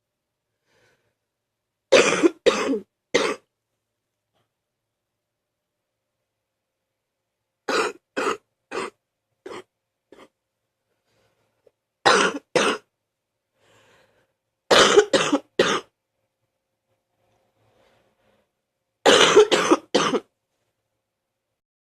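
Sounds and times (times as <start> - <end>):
person coughing wet chesty coughs: 1.9 - 3.5, 7.7 - 10.3, 12.0 - 12.9, 14.7 - 15.9, 19.0 - 20.3.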